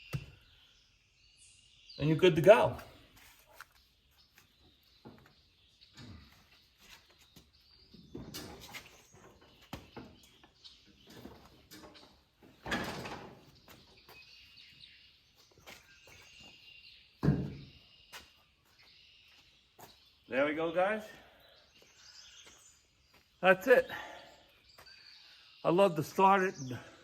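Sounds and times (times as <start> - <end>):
faint bird chirps: 13.5 - 27.0.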